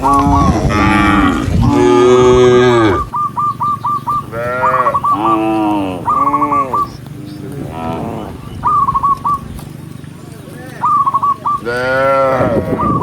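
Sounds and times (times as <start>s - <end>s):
cattle mooing: 0.0s - 3.3s, 4.1s - 8.6s, 11.6s - 13.0s.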